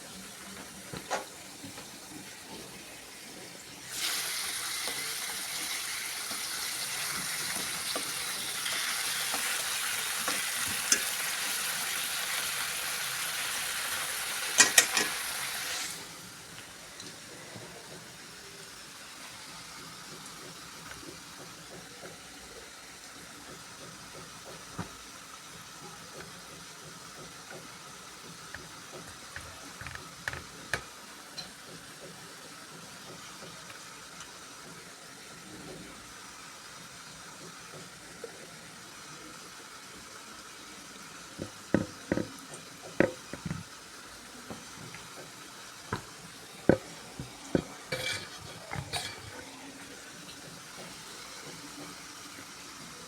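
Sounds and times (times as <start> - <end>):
food sizzling in a pan: 0.0 - 53.0
utensil clattering against pan: 7.4 - 11.3, 14.5 - 15.4, 41.4 - 43.7, 45.9 - 49.5.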